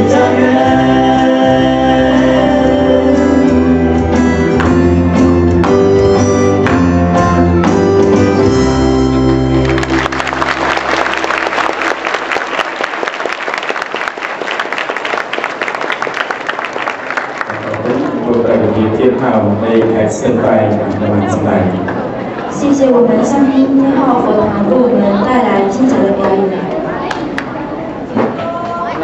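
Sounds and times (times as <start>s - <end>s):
music with held chords and bass: 0.0s - 10.5s
audience applauding: 9.4s - 18.9s.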